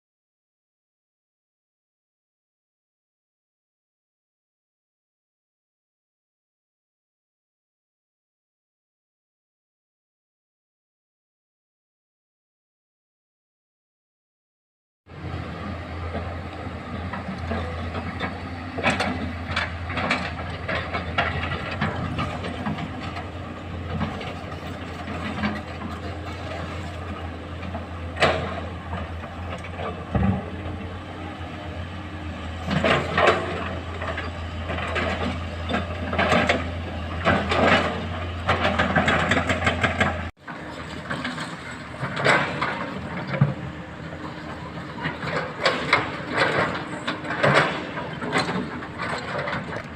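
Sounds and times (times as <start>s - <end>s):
excavator diesel engine running: 15.1s - 49.9s.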